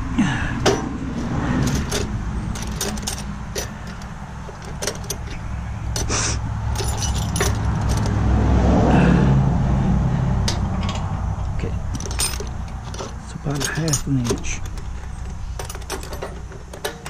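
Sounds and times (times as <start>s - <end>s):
metal fittings clinking: 1.6s - 6.1s, 6.7s - 8.2s, 11.9s - 17.0s.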